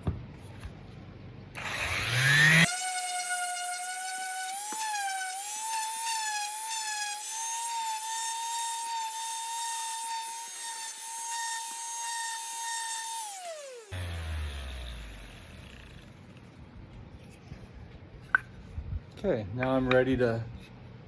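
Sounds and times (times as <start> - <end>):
power sander whining: 1.6 - 16.4.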